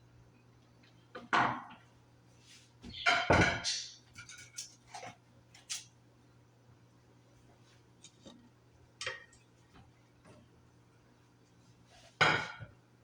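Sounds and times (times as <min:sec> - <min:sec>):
dishes clunking: 0:02.9 - 0:04.5, 0:12.2 - 0:12.8
dishes and utensils clattering: 0:02.9 - 0:05.2, 0:12.2 - 0:12.7.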